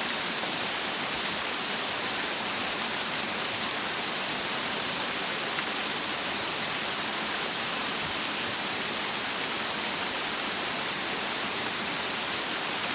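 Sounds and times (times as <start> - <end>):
waterfall and river rushing: 0.0 - 12.9.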